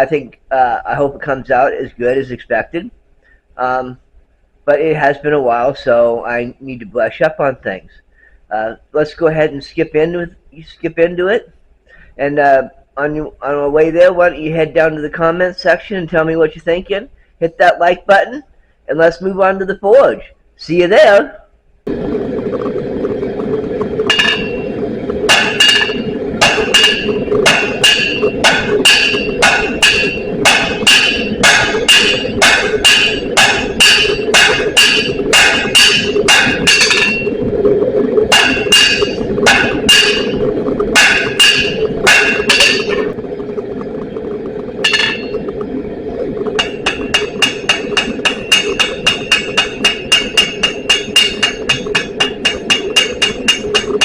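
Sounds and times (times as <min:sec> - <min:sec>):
steady drone: 0:21.9 - 0:54.0
hammer ringing on anvil: 0:24.1 - 0:24.7, 0:25.3 - 0:37.3, 0:38.3 - 0:40.4, 0:41.0 - 0:43.1, 0:44.8 - 0:45.4, 0:46.6 - 0:53.9.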